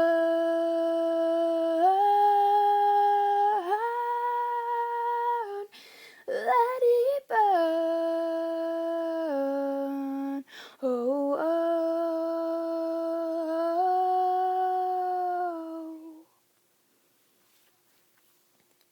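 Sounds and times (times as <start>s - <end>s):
woman humming: 0.0s - 5.7s, 7.4s - 16.3s.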